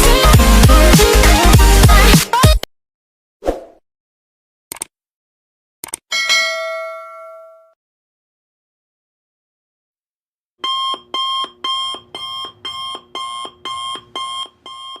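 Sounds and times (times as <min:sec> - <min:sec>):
electronic alarm beeping: 0:10.6 - 0:15.0.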